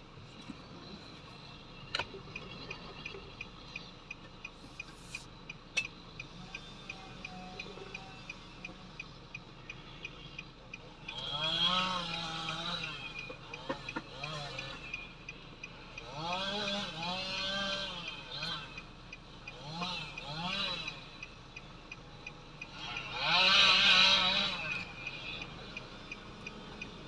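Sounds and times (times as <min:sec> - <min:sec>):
rapid steady ticking: 0:00.0 - 0:17.0.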